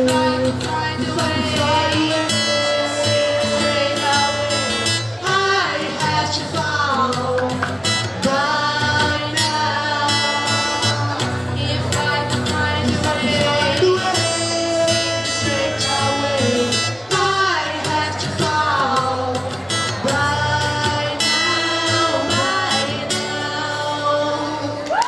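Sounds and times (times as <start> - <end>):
acoustic guitar: 0.0 - 25.0
person singing: 0.0 - 25.0.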